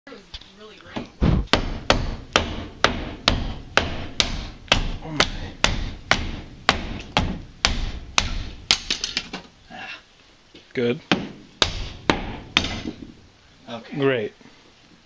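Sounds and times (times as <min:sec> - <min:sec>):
hammer striking door frame: 0:01.5 - 0:09.3, 0:11.1 - 0:13.1.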